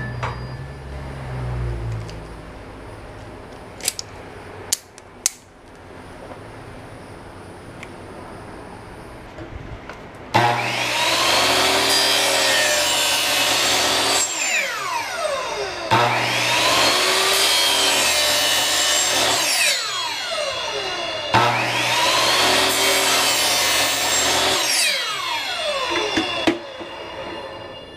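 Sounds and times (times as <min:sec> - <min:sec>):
electric saw cutting plastic pipe: 0:10.4 - 0:27.9.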